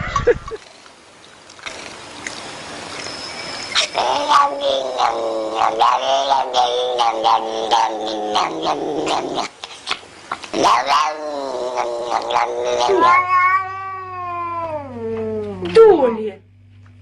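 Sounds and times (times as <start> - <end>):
cat yowling: 3.7 - 9.5, 10.6 - 15.6.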